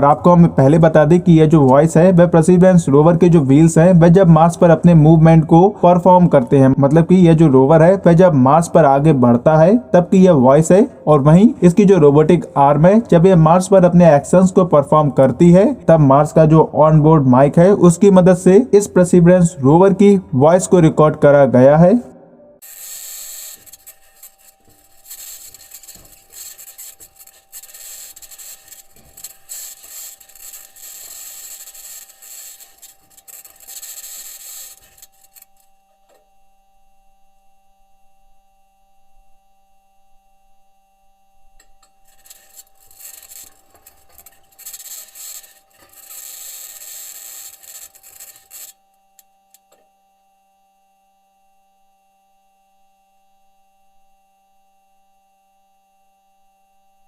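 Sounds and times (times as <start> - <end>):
faint hum and tone: 0.0 - 57.0
quiet crackles: 22.6 - 36.3, 41.5 - 49.9.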